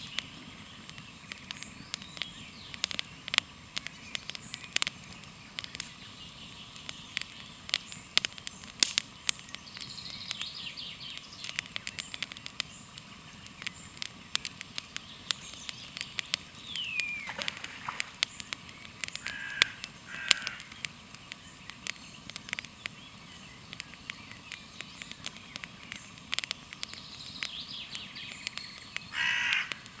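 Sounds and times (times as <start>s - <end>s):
birds calling: 0.0s - 30.0s
campfire crackling and popping: 0.0s - 30.0s
faint steady hiss: 0.0s - 30.0s
harsh cawing calls: 19.2s - 20.8s, 29.1s - 30.0s.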